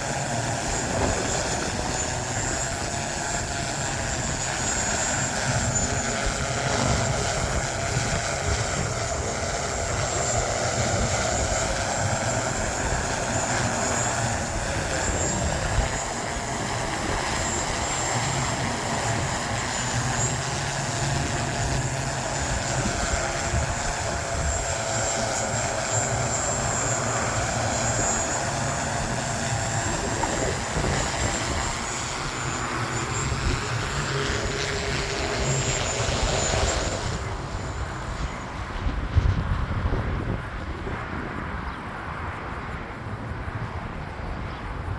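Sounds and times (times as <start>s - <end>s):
propellers droning with high whine: 0.0s - 44.9s
wind rumble on microphone: 0.0s - 44.9s.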